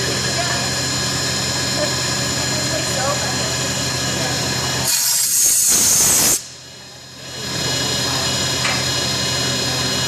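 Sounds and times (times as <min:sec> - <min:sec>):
cnc machine humming and whining: 0:00.0 - 0:04.9, 0:06.4 - 0:10.0
loud high hiss: 0:04.8 - 0:06.6.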